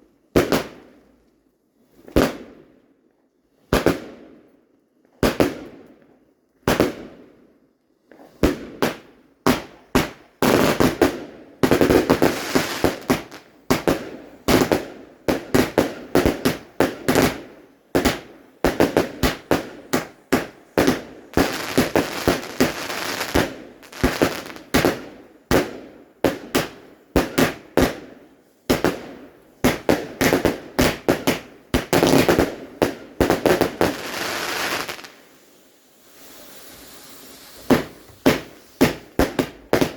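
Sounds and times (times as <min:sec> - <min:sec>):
fireworks bangs: 0:08.4 - 0:17.4, 0:18.0 - 0:28.0, 0:28.7 - 0:39.9.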